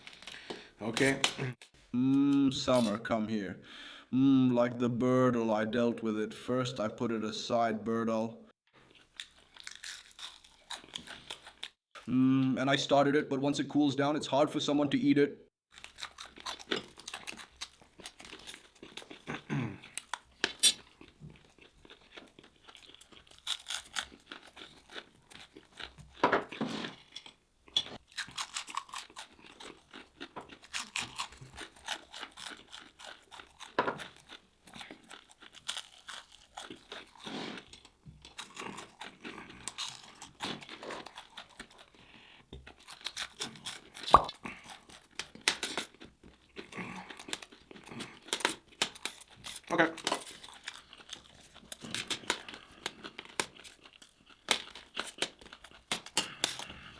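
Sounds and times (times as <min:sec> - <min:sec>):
chewing crunchy fried food: 0:08.8 - 0:11.9, 0:15.7 - 0:56.9.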